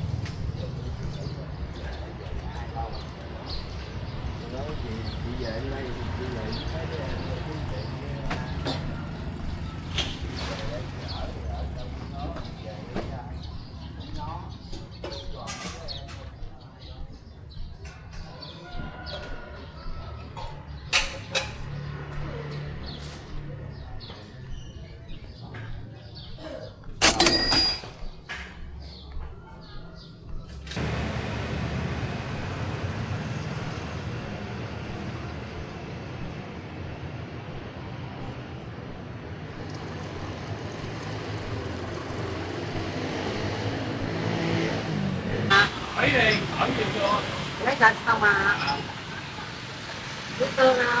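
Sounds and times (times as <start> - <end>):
small birds chirping: 0.0 - 27.0, 27.9 - 30.9
traffic rumble: 0.0 - 51.0.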